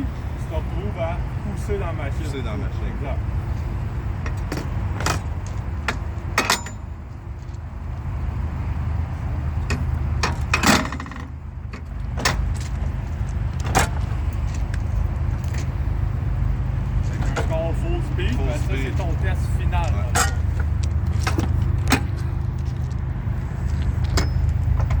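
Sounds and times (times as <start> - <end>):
low engine-like rumble: 0.0 - 25.0
metallic clicks and clanks: 4.2 - 6.9, 9.7 - 12.8, 19.9 - 23.0.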